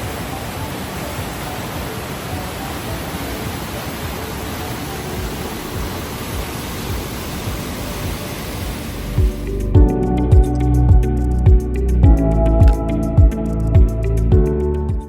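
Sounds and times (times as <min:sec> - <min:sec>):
waterfall rushing: 0:00.0 - 0:09.7
music with low beats: 0:05.2 - 0:15.0.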